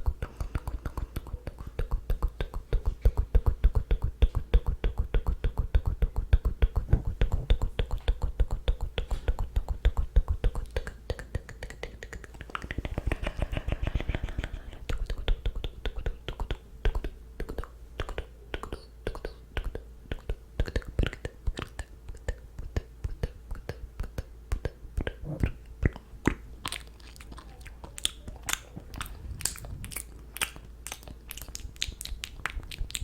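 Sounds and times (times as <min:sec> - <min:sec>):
wet tongue and lip clicks: 0:00.0 - 0:33.0
soft breathing: 0:12.5 - 0:15.0, 0:28.7 - 0:30.3.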